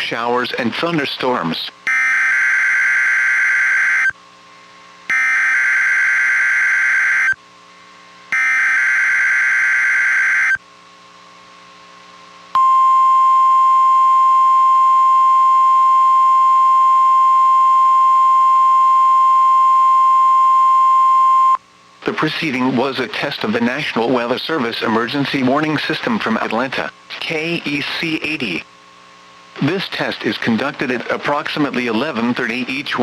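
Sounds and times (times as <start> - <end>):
steady warning alarm tone: 1.8 - 4.2, 5.1 - 7.4, 8.3 - 10.6.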